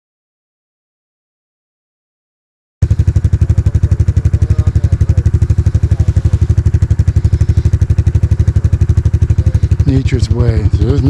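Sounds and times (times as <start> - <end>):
atv engine idling: 2.8 - 11.0.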